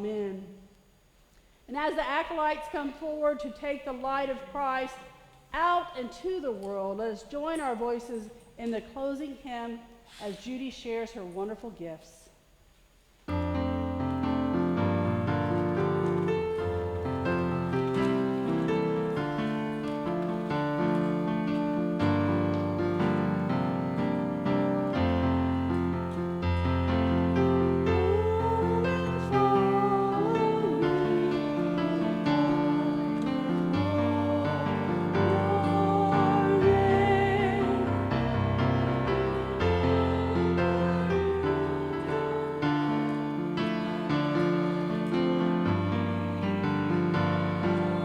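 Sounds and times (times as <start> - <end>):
hymn on keyboard chords: 13.3 - 48.0
voices singing: 13.4 - 48.0.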